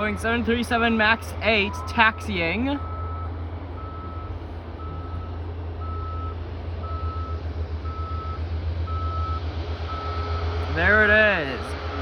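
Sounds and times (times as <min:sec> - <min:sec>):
steady low rumble: 0:00.0 - 0:12.0
reversing alarm beeping: 0:01.6 - 0:10.5.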